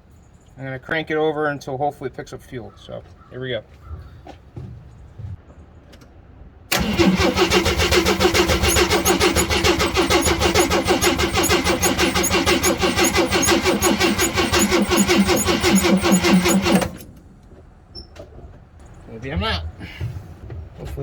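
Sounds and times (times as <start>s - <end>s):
engine cranking by starter: 6.7s - 17.6s.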